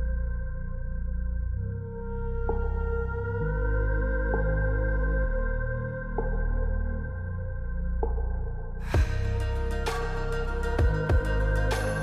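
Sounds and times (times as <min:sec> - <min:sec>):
low bass line: 0:00.0 - 0:12.0
bell-like notes: 0:08.9 - 0:12.0.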